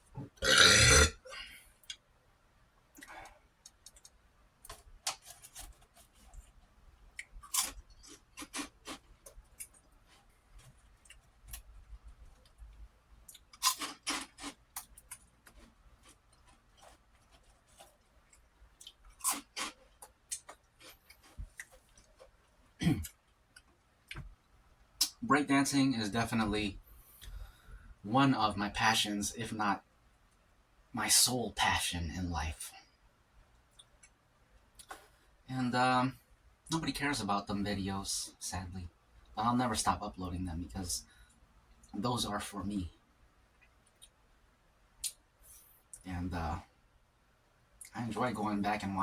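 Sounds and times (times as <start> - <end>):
man chewing crackers crunching: 0.4 - 1.1, 3.0 - 24.2, 33.6 - 35.1.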